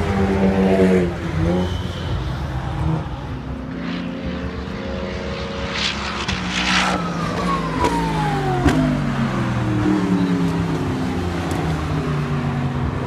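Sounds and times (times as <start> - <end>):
racing car passing by: 2.5 - 12.8.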